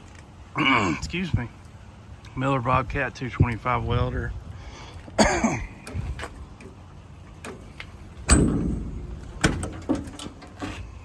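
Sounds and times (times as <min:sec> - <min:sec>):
latch clicks: 0:07.4 - 0:10.6
metal door clunk with ring: 0:08.2 - 0:10.7.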